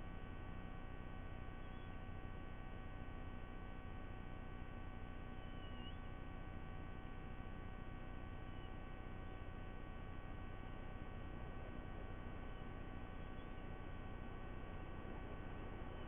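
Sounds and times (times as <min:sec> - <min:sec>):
electrical hum and hiss: 0:00.0 - 0:16.0
faint whining tones: 0:00.0 - 0:16.0
faint wavering chirp: 0:01.3 - 0:02.2, 0:04.8 - 0:16.0.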